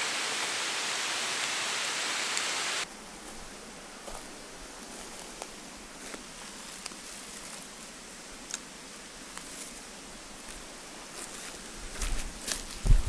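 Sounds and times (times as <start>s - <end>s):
river flowing over stones: 0.0s - 2.8s.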